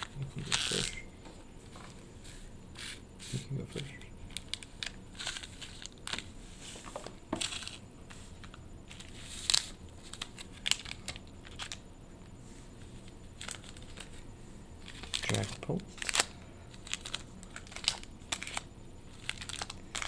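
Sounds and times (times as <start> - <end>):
foil packs crinkling: 8.4 - 11.8, 13.4 - 14.2, 14.8 - 20.0.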